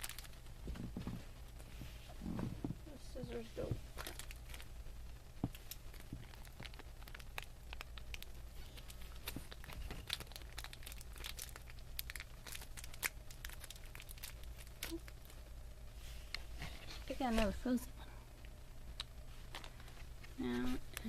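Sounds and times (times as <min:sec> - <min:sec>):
plastic packaging crinkling and tearing: 0:00.0 - 0:01.1, 0:03.9 - 0:04.7, 0:05.4 - 0:15.4.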